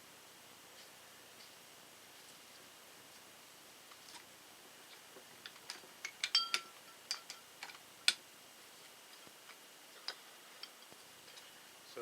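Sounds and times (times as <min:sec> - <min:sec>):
metal parts clinking: 0:06.0 - 0:07.8.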